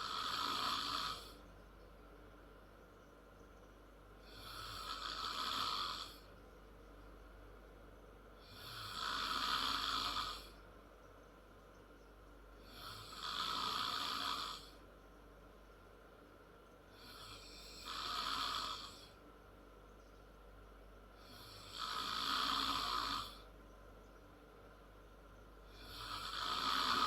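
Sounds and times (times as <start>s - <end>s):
girl snoring loudly: 0.0s - 1.4s, 4.2s - 6.3s, 8.4s - 10.5s, 12.6s - 14.8s, 17.0s - 19.2s, 21.2s - 23.5s, 25.8s - 27.0s.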